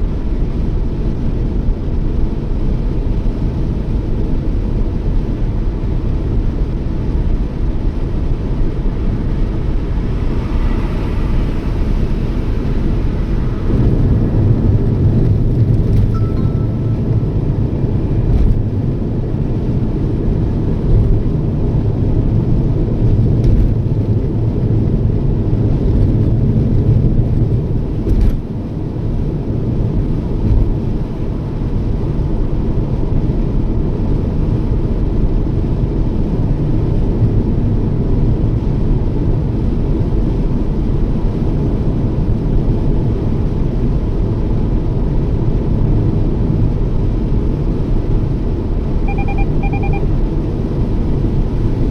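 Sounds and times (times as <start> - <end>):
car road and engine rumble: 0.0 - 51.9.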